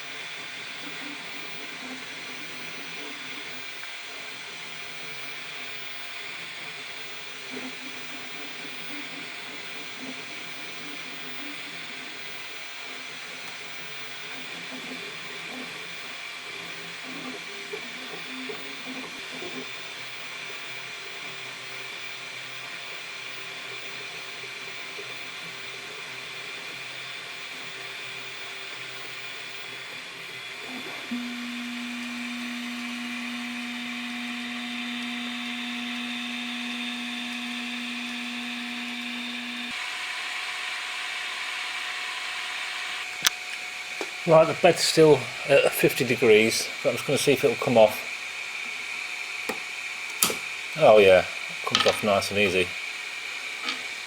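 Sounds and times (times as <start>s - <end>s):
printer fan hiss: 13.3s - 54.0s
stepper motors whirring: 28.0s - 54.0s.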